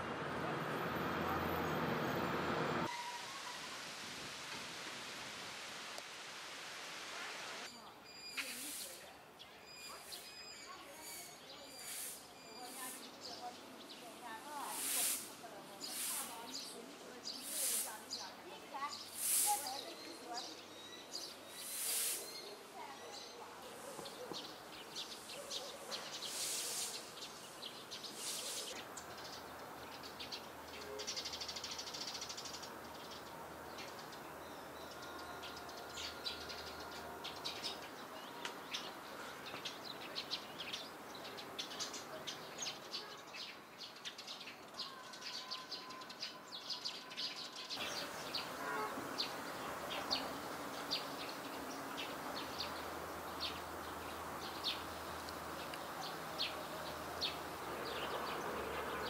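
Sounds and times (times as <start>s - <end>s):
steady background hiss: 2.4s - 30.8s
small birds chirping: 7.6s - 59.0s.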